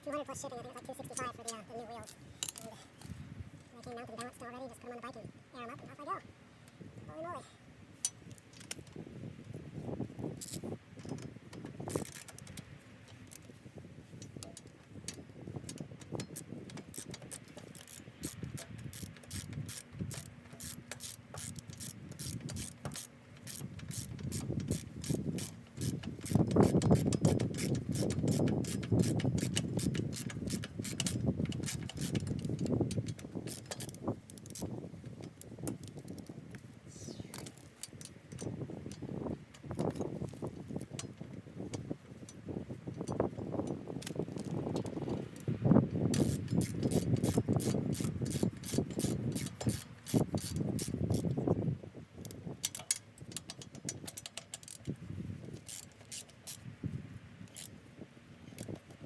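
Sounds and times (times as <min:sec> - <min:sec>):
ratchet wrench clicking: 0:01.2 - 0:03.1, 0:10.4 - 0:11.3, 0:11.9 - 0:12.6, 0:14.3 - 0:36.3, 0:46.1 - 0:51.4, 0:52.2 - 0:56.6, 0:57.5 - 0:57.8.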